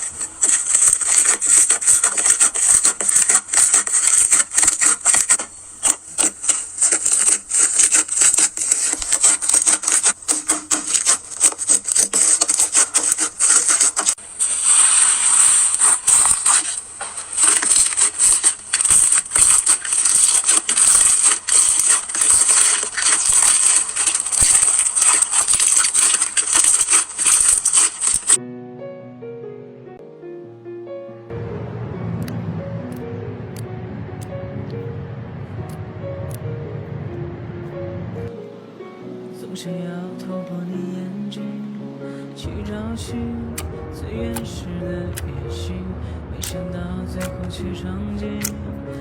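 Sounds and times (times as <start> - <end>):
crunchy slime crackling and popping: 0.0 - 28.4, 45.1 - 45.4, 46.4 - 47.7.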